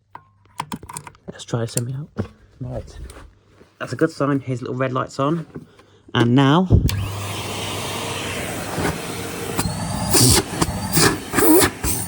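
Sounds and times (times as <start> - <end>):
vacuum cleaner running: 6.8 - 12.0
hissing bursts: 6.9 - 12.0.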